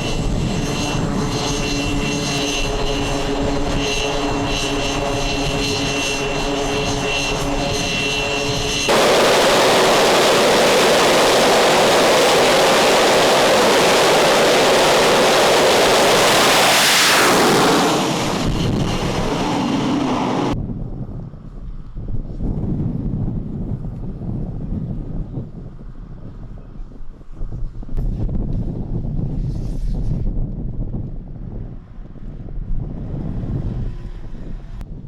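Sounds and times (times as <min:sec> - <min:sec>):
high jet whine: 0:00.0 - 0:20.6
loud jet roar passing: 0:00.0 - 0:20.6.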